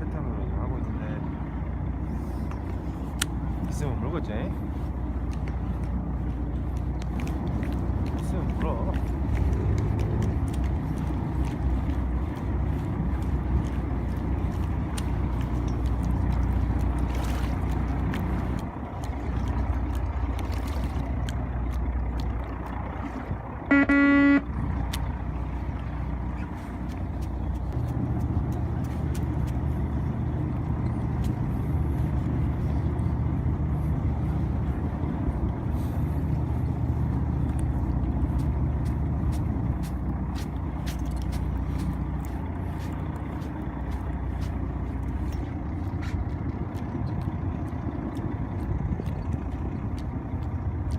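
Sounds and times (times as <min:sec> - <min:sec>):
boat engine running: 0:00.0 - 0:50.9
horn blast: 0:23.7 - 0:24.6.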